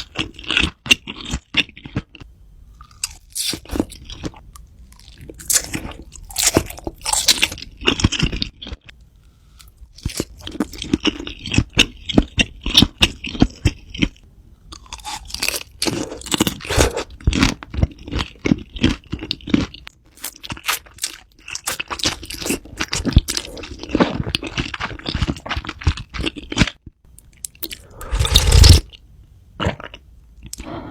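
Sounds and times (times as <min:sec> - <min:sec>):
person chewing crunchy food: 0:00.0 - 0:29.0.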